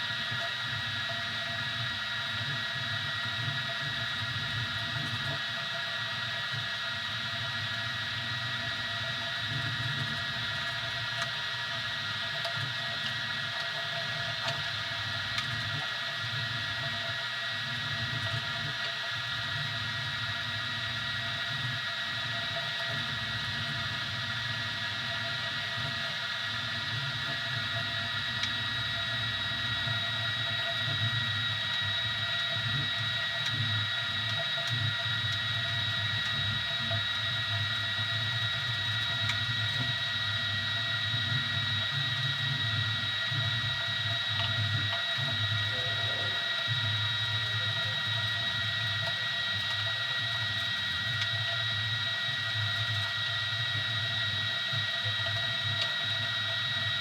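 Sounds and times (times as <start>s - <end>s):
printer motors whining: 27.0s - 57.0s.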